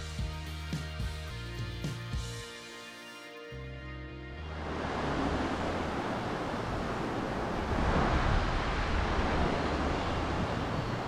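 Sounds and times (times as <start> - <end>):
waves washing onto a beach: 4.5 - 11.0
wind buffeting microphone: 4.5 - 11.0.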